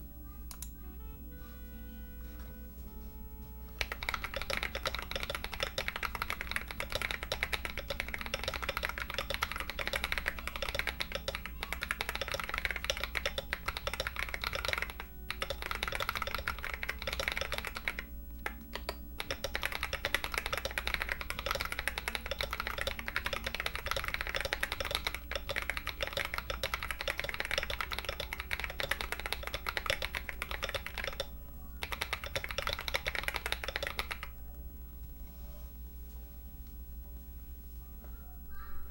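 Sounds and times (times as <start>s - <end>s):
fast typing on mechanical keyboard: 3.8s - 34.4s.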